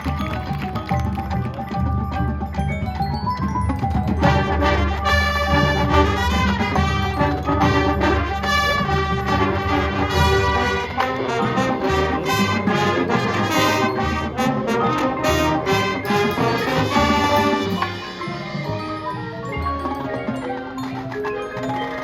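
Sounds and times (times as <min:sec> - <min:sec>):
marching band playing: 0:00.0 - 0:22.0.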